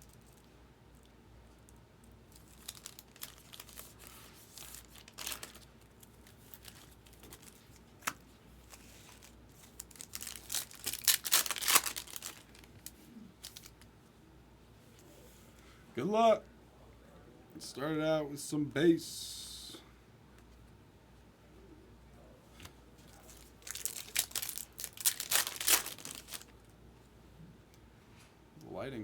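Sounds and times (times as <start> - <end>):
foil wrapper tearing and crinkling: 2.3 - 13.9, 23.1 - 26.5.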